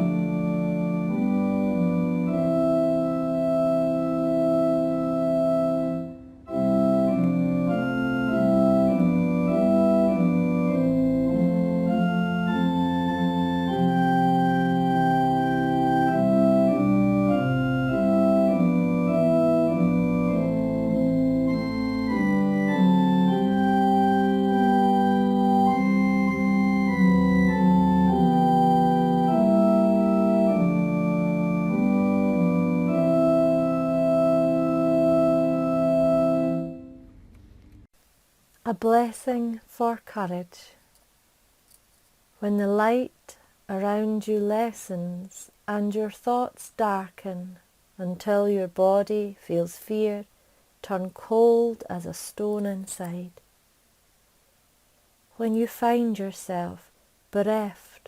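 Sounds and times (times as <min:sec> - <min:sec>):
organ playing hymn chords: 0:00.0 - 0:37.2.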